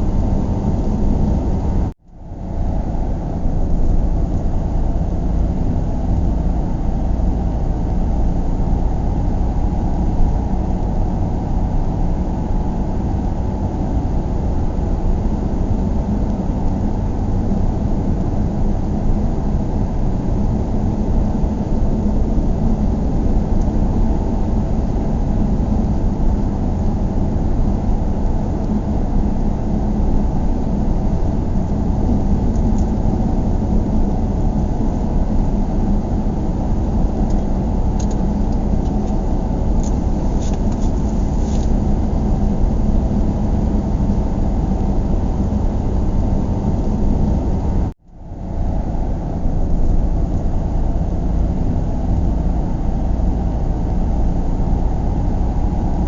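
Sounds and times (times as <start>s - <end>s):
car interior road and engine drone: 0.0s - 56.0s.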